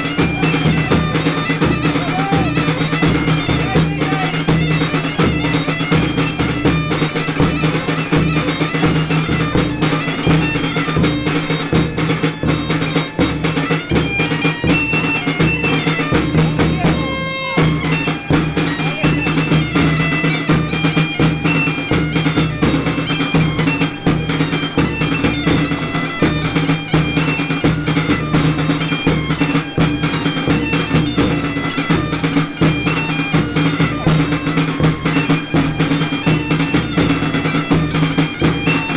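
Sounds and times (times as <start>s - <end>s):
bagpipe melody over drone: 0.0s - 38.9s
drum beats: 0.0s - 38.9s.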